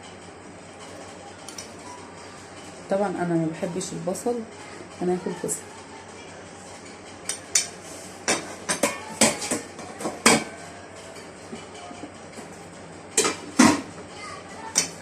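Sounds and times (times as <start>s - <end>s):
cutlery clinking against a plate: 6.7s - 13.9s.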